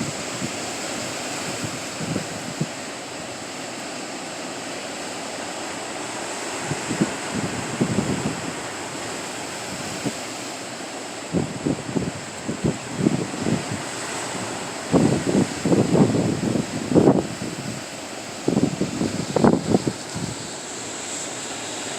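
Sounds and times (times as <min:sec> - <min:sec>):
wind buffeting microphone: 0:00.0 - 0:03.4, 0:06.5 - 0:10.3, 0:11.2 - 0:20.6
sea surf washing on shore: 0:00.0 - 0:21.9.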